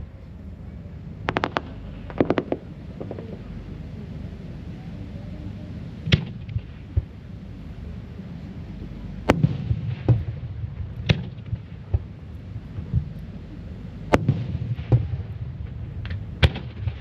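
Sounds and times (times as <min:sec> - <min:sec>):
low rumble: 0:00.0 - 0:17.0
fireworks bursting: 0:01.2 - 0:03.8, 0:09.2 - 0:13.2, 0:14.1 - 0:17.0.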